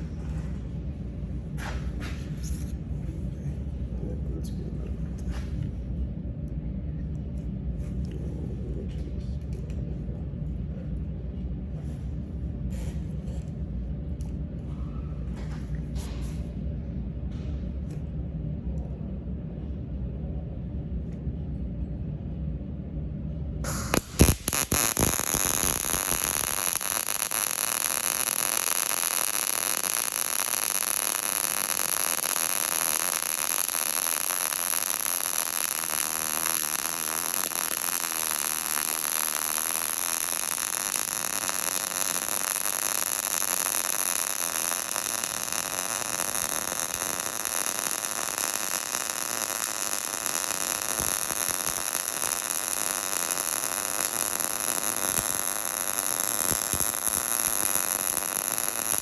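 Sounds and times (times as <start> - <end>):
welding arc hissing: 23.6 - 59.0.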